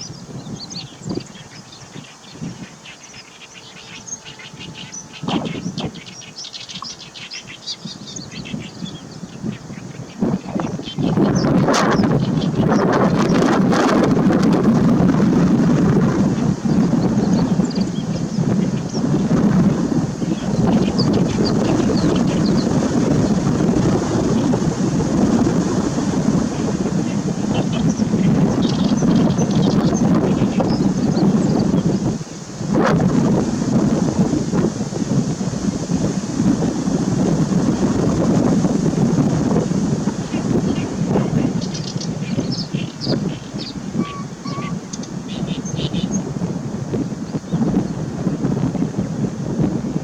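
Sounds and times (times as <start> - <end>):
bird singing short notes: 0.0 - 9.2, 41.6 - 46.2
faint bird song: 0.0 - 13.4, 16.3 - 23.6, 26.5 - 32.1, 40.2 - 46.3
wind buffeting microphone: 0.0 - 50.0.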